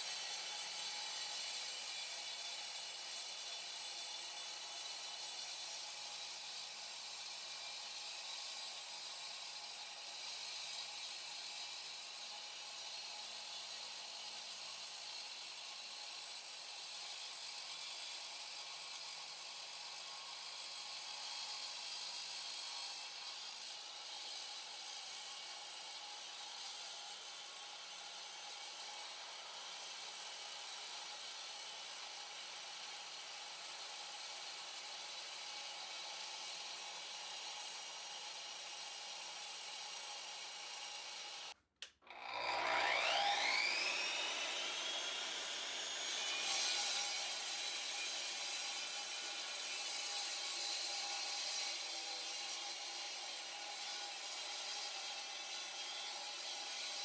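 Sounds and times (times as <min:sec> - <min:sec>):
motor spinning up whine: 0:42.1 - 0:46.4
power tool grinding: 0:42.1 - 0:51.0.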